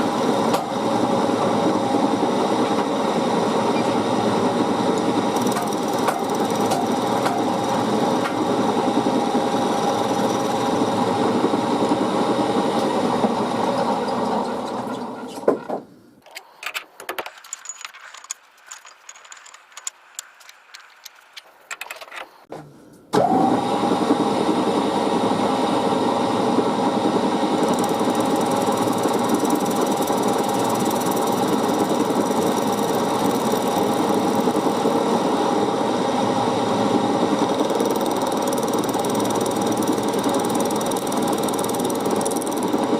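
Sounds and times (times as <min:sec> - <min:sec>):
small machine tool running: 0:00.0 - 0:14.9, 0:27.3 - 0:42.9.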